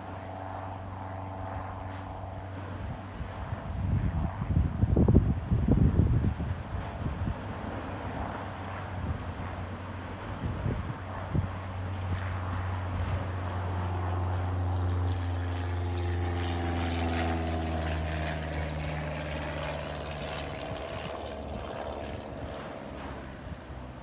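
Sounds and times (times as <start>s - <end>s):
propeller aircraft flying past: 0.0s - 24.0s.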